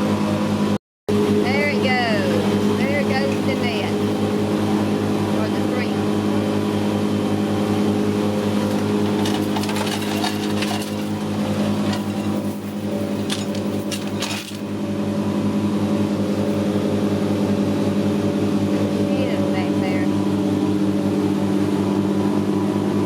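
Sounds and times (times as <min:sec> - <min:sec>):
boat engine droning: 0:00.0 - 0:23.0
clattering knocks: 0:08.4 - 0:14.8.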